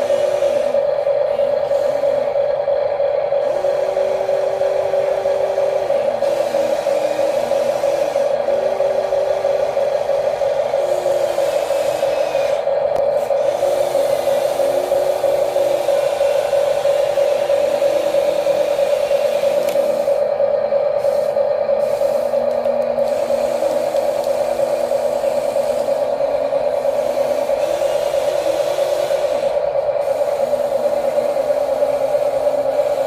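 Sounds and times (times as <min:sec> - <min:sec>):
quieter motor whine changing pitch: 0:00.0 - 0:33.0
small electric motors whining: 0:03.1 - 0:20.3, 0:20.9 - 0:33.0.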